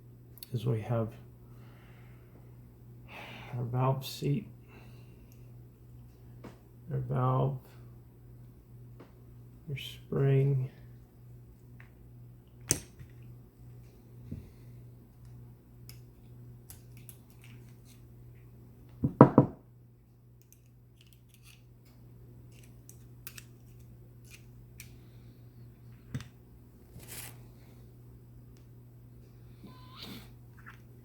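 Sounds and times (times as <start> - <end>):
steady low hum: 0.0 - 31.0
small parts clicking: 16.7 - 18.0, 20.4 - 25.0.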